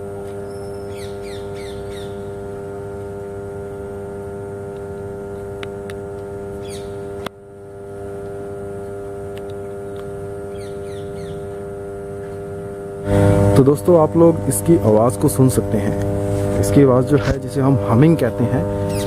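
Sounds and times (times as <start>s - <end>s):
power transformer humming: 0.0s - 19.0s
click: 9.4s - 10.1s.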